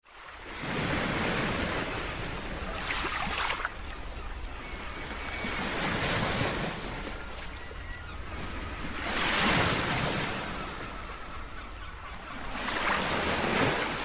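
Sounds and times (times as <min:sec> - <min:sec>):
ocean waves breaking: 0:00.0 - 0:14.0.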